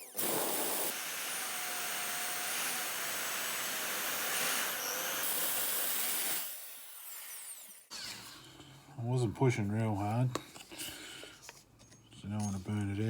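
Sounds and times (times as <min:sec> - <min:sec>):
electric drill grinding into steel: 0:00.0 - 0:08.5.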